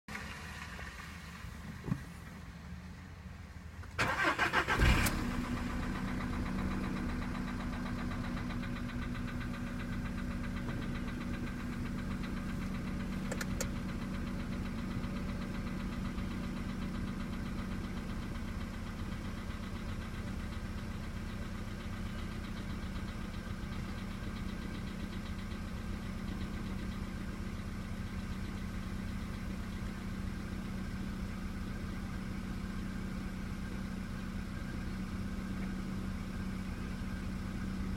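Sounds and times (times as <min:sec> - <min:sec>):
engine idling with a knock: 0:00.1 - 0:02.4, 0:05.5 - 0:31.0
car engine cold start: 0:03.8 - 0:18.2.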